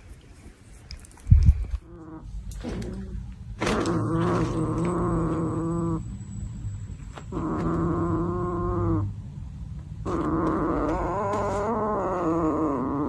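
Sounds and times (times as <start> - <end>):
low steady hum: 0.0 - 13.0
animal long drawn-out cries: 7.3 - 9.2, 10.1 - 13.0.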